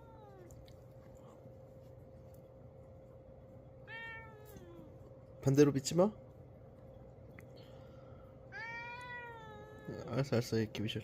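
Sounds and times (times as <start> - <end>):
cat meowing softly: 0.0 - 0.8, 3.8 - 5.0, 8.5 - 10.2
faint steady hum: 0.0 - 11.0.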